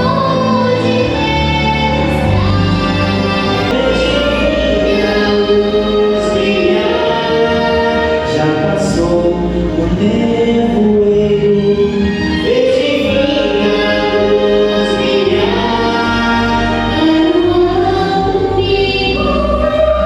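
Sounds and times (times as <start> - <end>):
choir singing: 0.0 - 20.0
instrumental accompaniment: 0.0 - 20.0.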